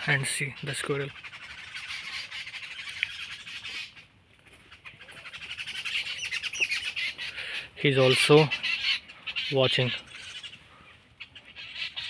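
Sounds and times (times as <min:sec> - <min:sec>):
birds squawking and chattering: 0:00.0 - 0:12.0.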